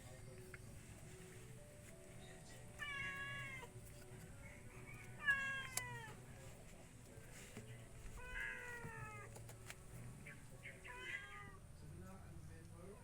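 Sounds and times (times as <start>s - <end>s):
cat meowing: 2.8s - 3.7s, 5.2s - 6.2s, 8.2s - 9.3s, 10.8s - 11.6s.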